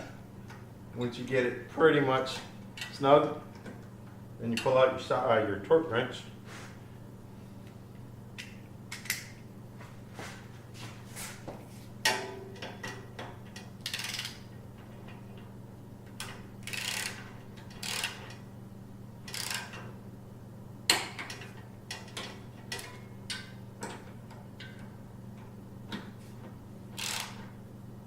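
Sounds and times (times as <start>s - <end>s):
ratchet wrench ratcheting: 13.5s - 14.4s, 16.6s - 18.4s, 19.3s - 19.8s, 27.0s - 27.5s.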